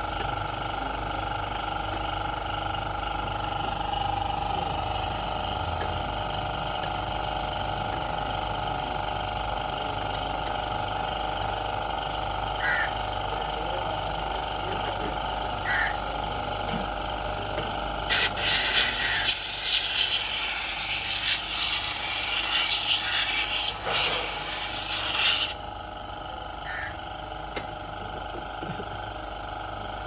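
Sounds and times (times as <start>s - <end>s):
steady machine hum: 0.0s - 30.0s
high-pressure water jet hissing: 18.1s - 25.6s.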